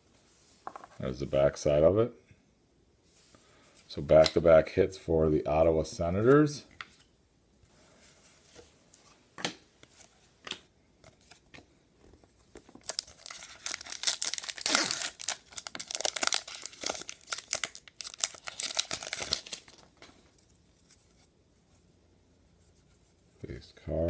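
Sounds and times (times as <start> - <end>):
foil wrapper ripping and crinkling: 12.8 - 19.9.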